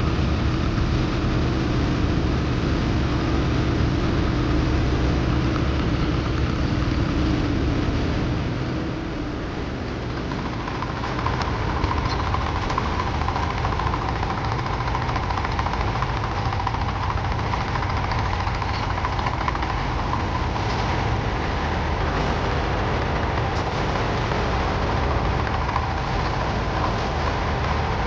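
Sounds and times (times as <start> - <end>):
tractor engine running: 0.0 - 28.0.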